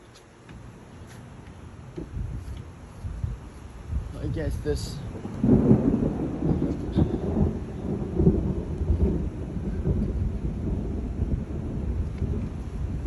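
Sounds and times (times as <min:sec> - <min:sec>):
thunder rumbling: 0:03.2 - 0:13.0.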